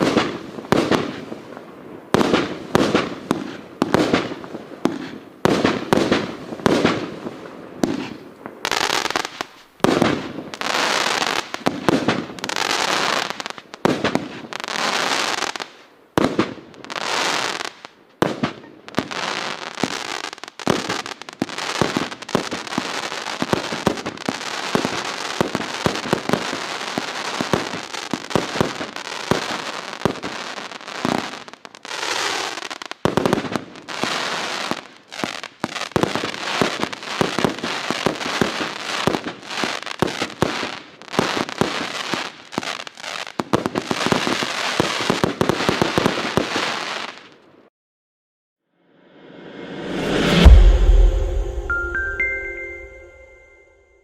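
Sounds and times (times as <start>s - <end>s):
firework launch reports: 49.2s - 53.2s.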